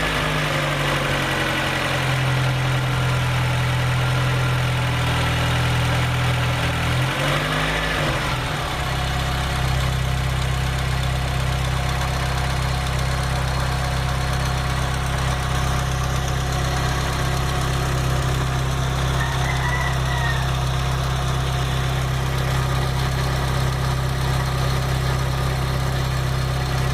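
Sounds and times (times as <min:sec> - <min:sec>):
car engine idling: 0:00.0 - 0:26.9.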